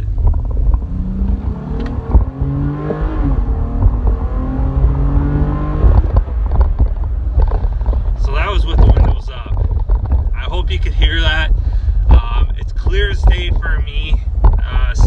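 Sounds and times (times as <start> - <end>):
engine accelerating hard: 0.0 - 9.7.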